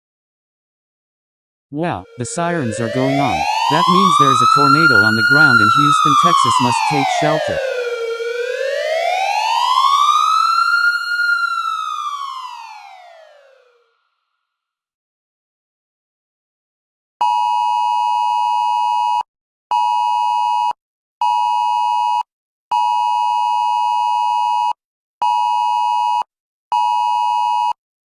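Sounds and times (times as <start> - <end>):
harsh two-tone alert beeps: 2.0 - 7.6.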